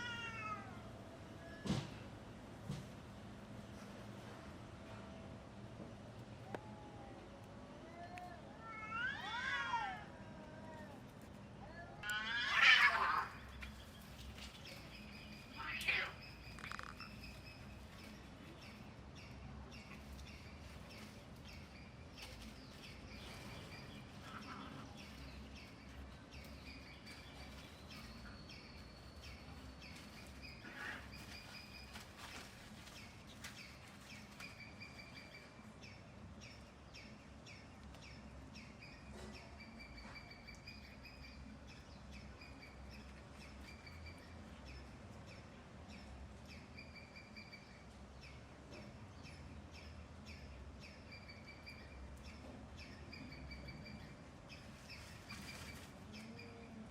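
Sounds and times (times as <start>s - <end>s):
steady background noise: 0.0s - 56.9s
bird chirping: 12.9s - 56.8s.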